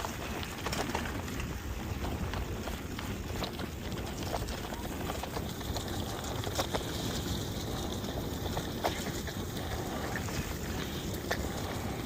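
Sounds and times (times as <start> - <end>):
bicycle tyres rushing: 0.0 - 12.0
bike clicks and rattles: 0.0 - 12.0
wind buffeting microphone: 0.0 - 12.0.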